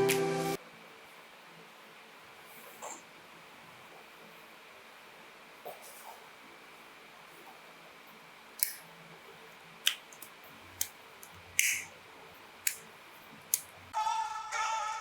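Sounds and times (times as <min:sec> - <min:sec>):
background music: 0:00.0 - 0:00.6, 0:14.0 - 0:15.0
sharp plastic clicks: 0:09.8 - 0:11.9, 0:12.6 - 0:12.9.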